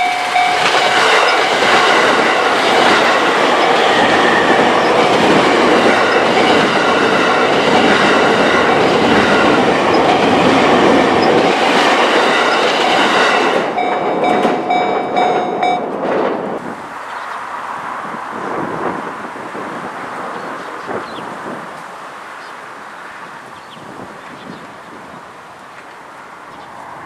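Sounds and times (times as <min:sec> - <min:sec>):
level crossing warning bell: 0:00.0 - 0:16.0
train wheels clattering: 0:00.0 - 0:16.6.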